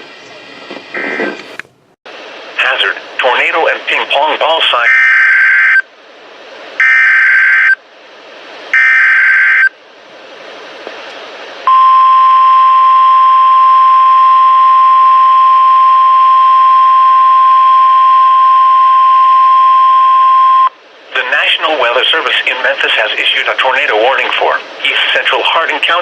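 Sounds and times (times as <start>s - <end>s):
radio hiss: 2.2s - 4.9s, 21.0s - 26.0s
steady warning alarm tone: 4.9s - 5.8s, 6.8s - 7.8s, 8.7s - 9.7s, 11.7s - 20.8s.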